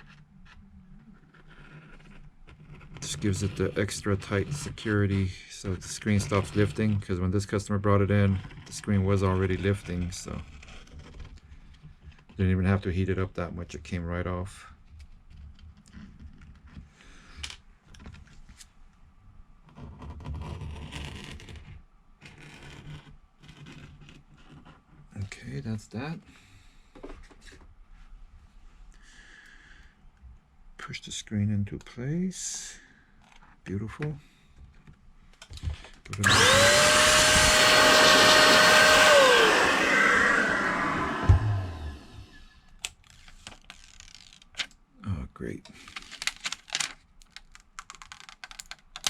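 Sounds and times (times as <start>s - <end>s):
rustling and scraping: 0.0s - 7.2s
electric blower motor: 36.2s - 42.4s
short thump: 41.2s - 41.6s.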